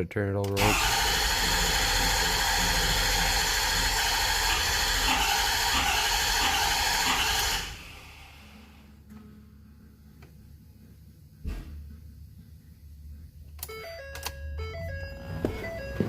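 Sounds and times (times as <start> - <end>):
starter cranking diesel engine: 0.5 - 8.7.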